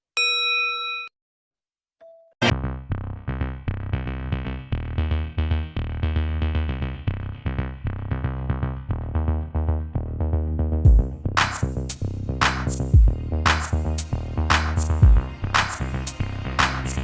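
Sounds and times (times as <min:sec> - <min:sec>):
electronic music with drum machine: 0:10.9 - 0:17.0.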